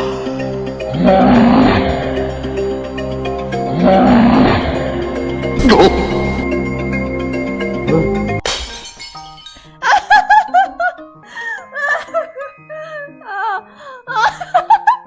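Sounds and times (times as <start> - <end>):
person sneezing: 5.6 - 6.5.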